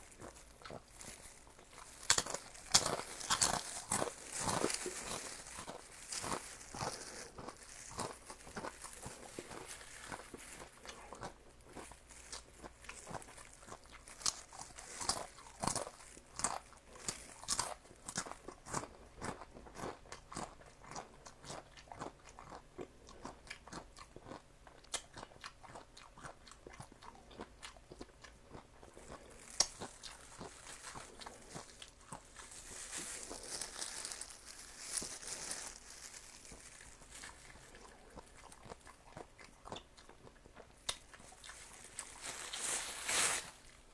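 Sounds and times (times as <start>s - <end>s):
crunchy chewing: 0.0s - 43.9s.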